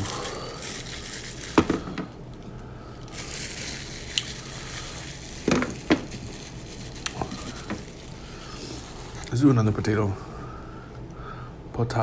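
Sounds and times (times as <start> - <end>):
crunching taco: 0.0 - 1.7, 3.0 - 9.4.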